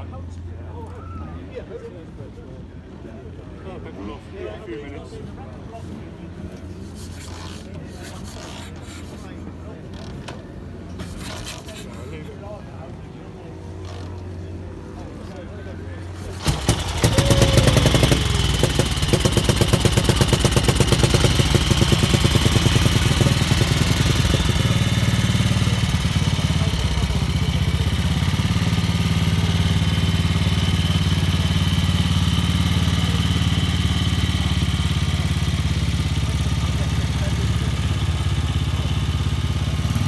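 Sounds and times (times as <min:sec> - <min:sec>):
motorcycle engine starting and idling: 0:16.0 - 0:40.0.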